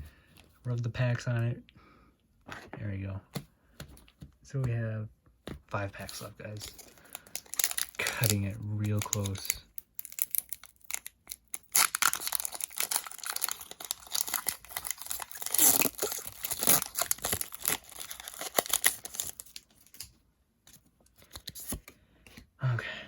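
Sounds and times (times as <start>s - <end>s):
foil wrapper tearing and crinkling: 6.5s - 20.0s.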